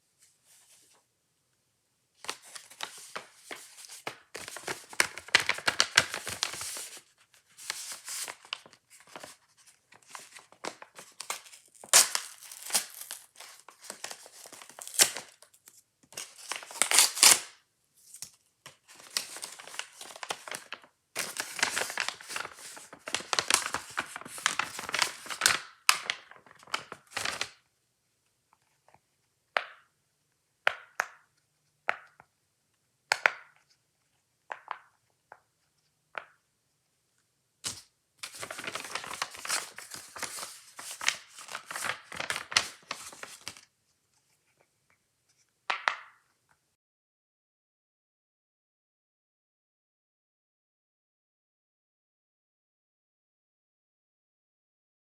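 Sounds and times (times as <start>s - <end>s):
plastic packaging crinkling and tearing: 2.3s - 17.6s, 18.8s - 27.6s, 37.7s - 43.6s.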